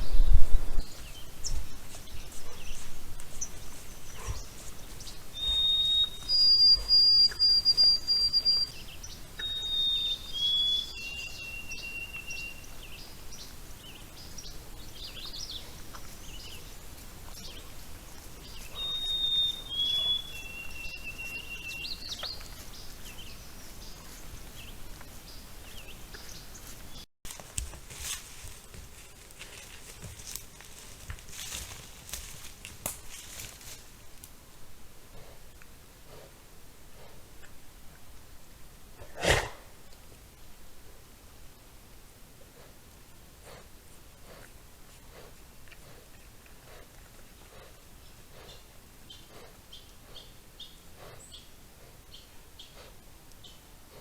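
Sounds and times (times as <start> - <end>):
songbird whistling: 5.3 - 12.6, 18.7 - 22.4.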